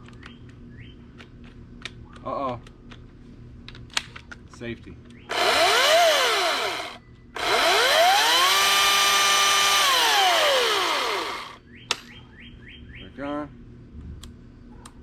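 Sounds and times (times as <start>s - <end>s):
electric chainsaw whine: 5.3s - 11.6s.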